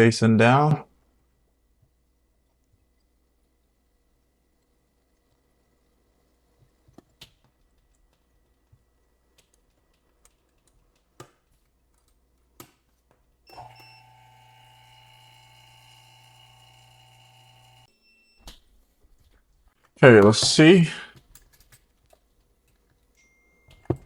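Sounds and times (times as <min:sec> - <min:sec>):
laminating machine humming: 0:13.5 - 0:17.9.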